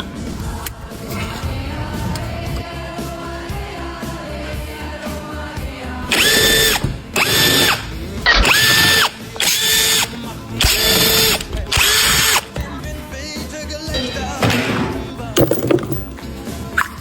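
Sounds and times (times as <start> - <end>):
cordless power tool whining: 6.1 - 12.5.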